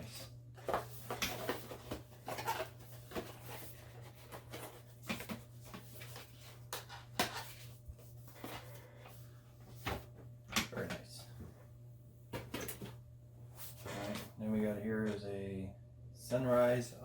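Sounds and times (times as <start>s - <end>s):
low steady hum: 0.0s - 17.0s
cardboard and plastic rustling: 0.2s - 8.8s.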